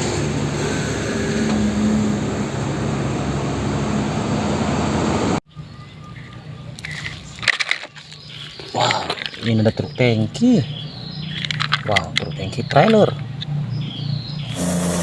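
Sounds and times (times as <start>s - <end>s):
truck engine rumbling: 0.0s - 15.0s.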